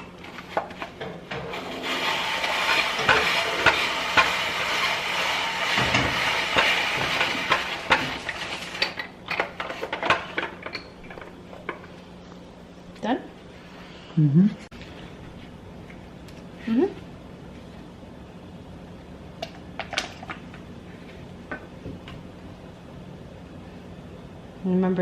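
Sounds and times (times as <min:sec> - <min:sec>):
utensil scraping a pan: 0:00.4 - 0:10.6.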